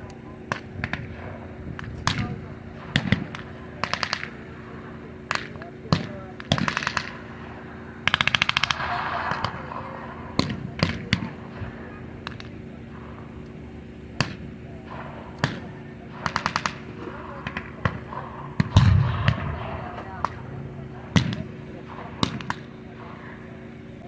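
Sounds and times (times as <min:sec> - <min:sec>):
machine-gun fire: 0:08.0 - 0:09.7, 0:14.2 - 0:20.4
rifle shots: 0:14.2 - 0:22.7
loud deep bang: 0:18.6 - 0:22.4.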